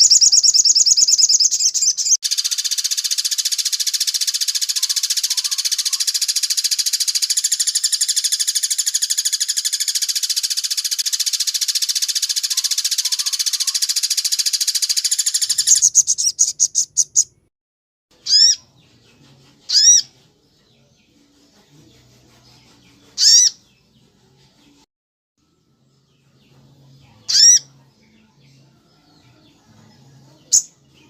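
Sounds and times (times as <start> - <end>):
bird fast rattling trill: 0.0 - 17.2.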